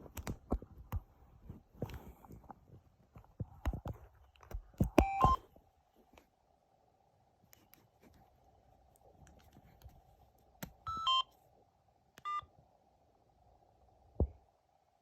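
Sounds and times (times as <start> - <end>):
mobile phone key beeps: 5.0 - 5.4, 10.9 - 11.3, 12.2 - 12.4.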